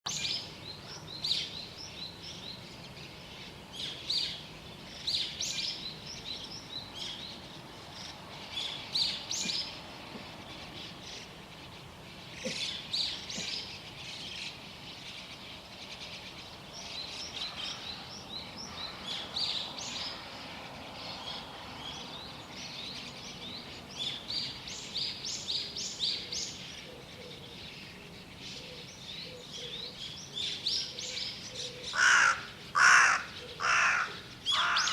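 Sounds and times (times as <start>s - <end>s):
songbirds chirping and twittering: 0.0s - 34.9s.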